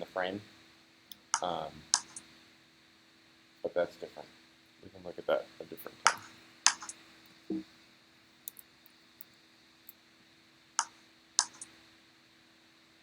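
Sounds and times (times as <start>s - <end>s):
faint steady hum: 0.0s - 13.0s
mouse and key clicks: 1.1s - 2.2s, 6.0s - 7.0s, 10.8s - 11.7s.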